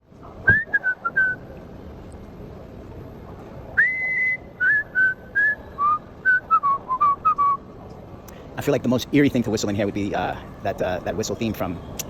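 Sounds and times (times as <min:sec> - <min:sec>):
steady background hum: 0:00.0 - 0:12.0
person whistling: 0:03.8 - 0:07.6.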